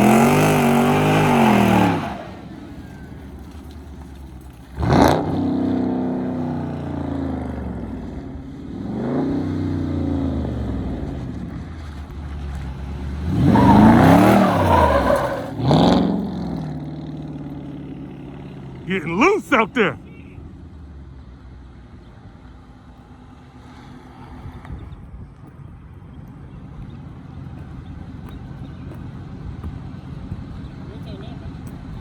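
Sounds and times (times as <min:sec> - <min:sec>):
car engine revving: 0:00.0 - 0:08.1, 0:12.4 - 0:18.1.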